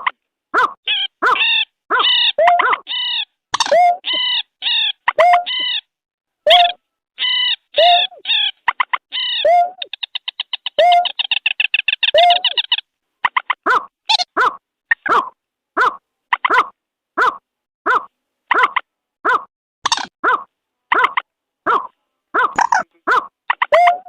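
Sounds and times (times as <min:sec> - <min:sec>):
bird calls: 0:00.0 - 0:05.9, 0:06.5 - 0:24.0
rail bird calls: 0:06.5 - 0:12.8.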